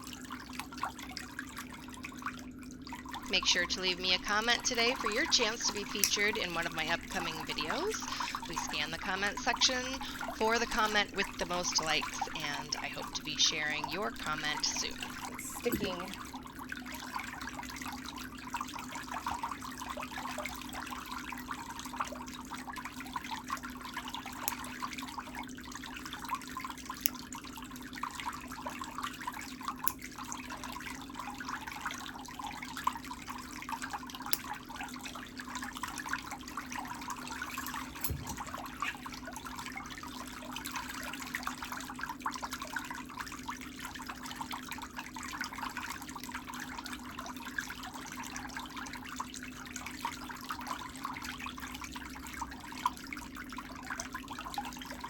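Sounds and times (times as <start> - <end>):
water bubbling in foot bath: 0.0 - 55.0
low hum: 3.3 - 16.2.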